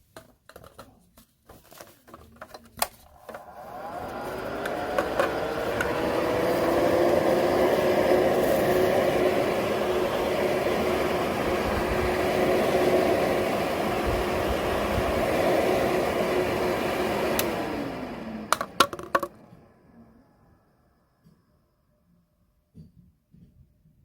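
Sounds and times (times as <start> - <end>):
electric nail drill whirring: 3.4 - 18.8
motor spinning down: 3.4 - 19.6.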